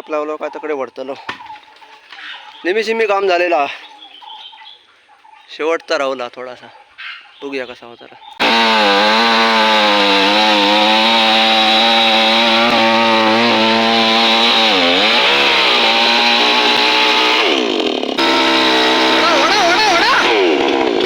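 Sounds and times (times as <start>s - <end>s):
chainsaw cutting wood: 8.4s - 21.0s.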